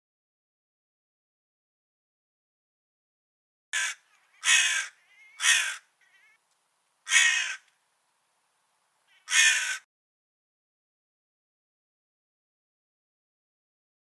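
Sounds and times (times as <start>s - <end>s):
crow cawing: 3.8s - 6.4s, 7.0s - 7.7s, 9.1s - 9.9s.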